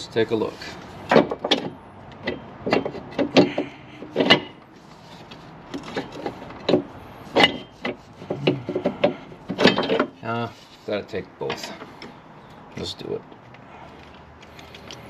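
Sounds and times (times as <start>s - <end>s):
hand tools knocking and clicking: 1.1s - 4.6s, 5.7s - 10.2s.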